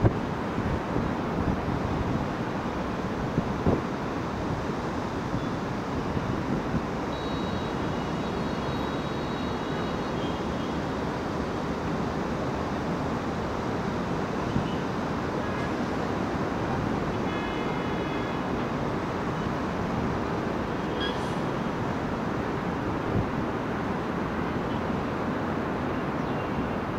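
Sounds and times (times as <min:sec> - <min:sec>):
street traffic: 0:00.0 - 0:26.9
faint high whine: 0:07.1 - 0:10.8.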